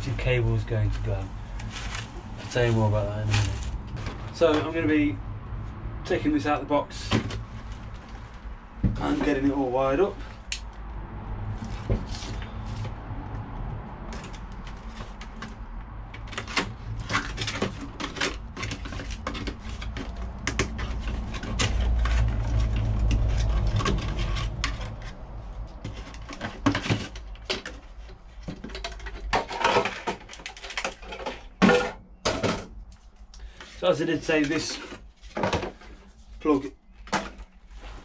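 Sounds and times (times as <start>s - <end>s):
cardboard and plastic packaging rustling: 0.0s - 4.9s, 6.1s - 10.5s, 11.5s - 13.0s, 14.1s - 38.0s
low rumble: 0.0s - 9.7s, 10.3s - 14.8s.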